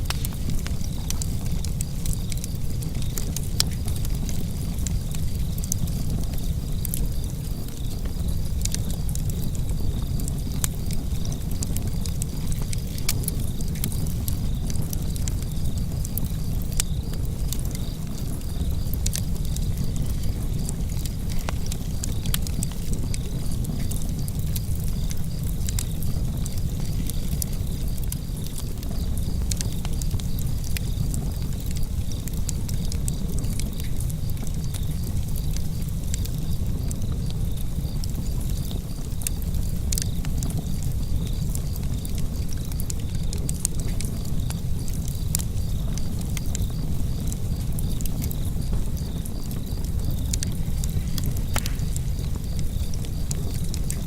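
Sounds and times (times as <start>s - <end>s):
fire crackling and popping: 0.0s - 54.0s
fire flames rumbling: 0.0s - 54.0s.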